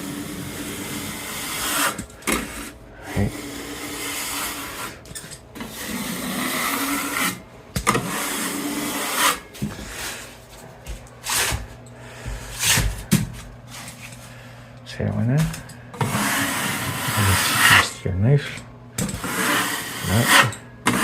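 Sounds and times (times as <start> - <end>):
putty knife scraping a wall: 0.0 - 10.3, 11.2 - 13.1, 16.0 - 18.0, 19.2 - 21.0.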